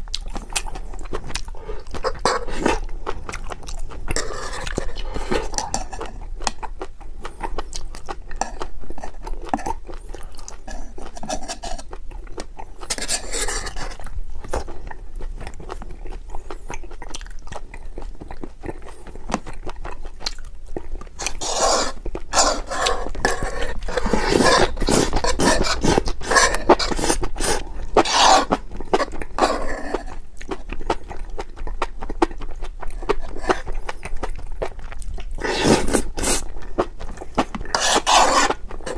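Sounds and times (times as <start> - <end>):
chewing: 0.0 - 38.9
cutlery scraping a dish: 37.7 - 38.9.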